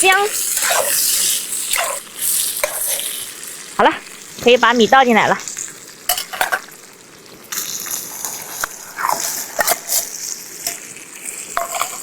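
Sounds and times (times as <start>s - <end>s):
frying sizzle: 0.0s - 12.0s.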